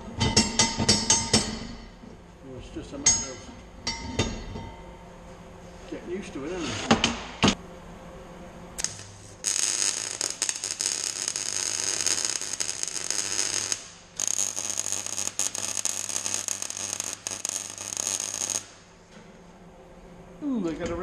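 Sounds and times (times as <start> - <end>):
welder hum: 7.5 - 19.6
crackling welding arc: 8.8 - 19.0.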